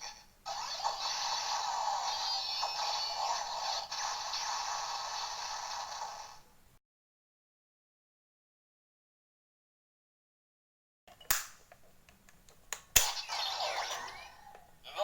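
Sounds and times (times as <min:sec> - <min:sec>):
toy belt electronic sound effects: 0:00.0 - 0:06.4, 0:13.1 - 0:15.0.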